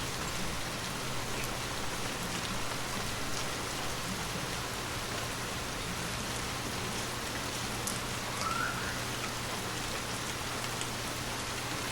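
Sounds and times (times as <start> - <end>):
gentle rain falling: 0.0 - 11.9.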